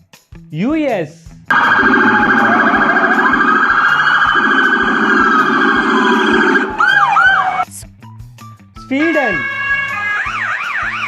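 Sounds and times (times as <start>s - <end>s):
police car siren: 1.5s - 7.7s, 9.4s - 11.0s.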